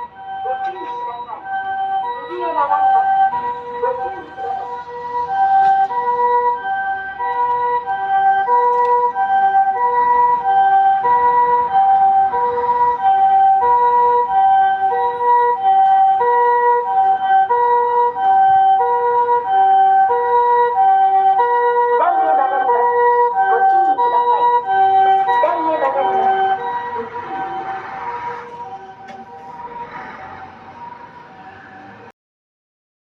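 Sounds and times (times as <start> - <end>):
two-tone ambulance siren: 0.0 - 32.1.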